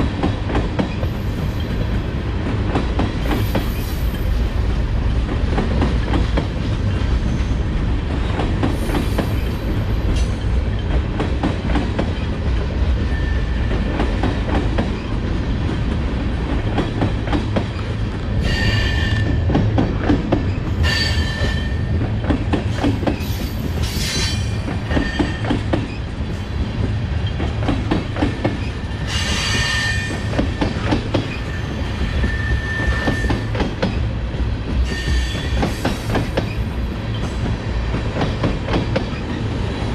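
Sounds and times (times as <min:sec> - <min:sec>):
freight train rumbling past: 0:00.0 - 0:39.9
high-pitched wheel squeal: 0:29.1 - 0:30.3, 0:31.3 - 0:33.6.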